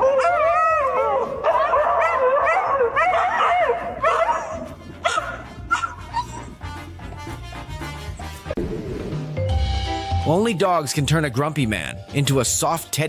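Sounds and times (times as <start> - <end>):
dog howling: 0.0 - 6.8
background music: 0.0 - 13.0.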